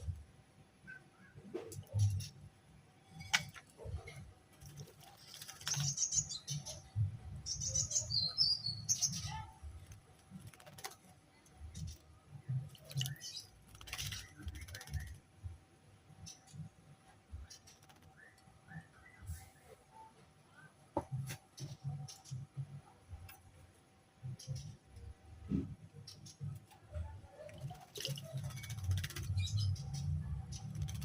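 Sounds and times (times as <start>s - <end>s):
songbird chirping: 0.0s - 31.0s
sharp clicks: 17.5s - 18.5s.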